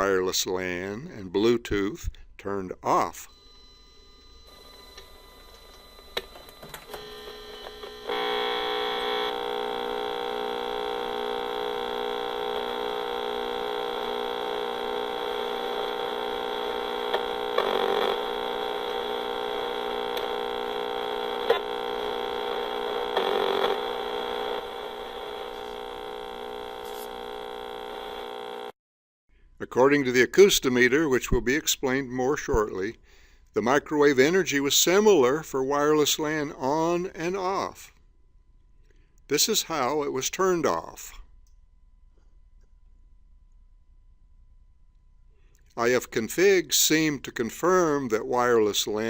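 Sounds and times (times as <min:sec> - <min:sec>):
meter speaker buzzing drone: 0:06.9 - 0:28.7.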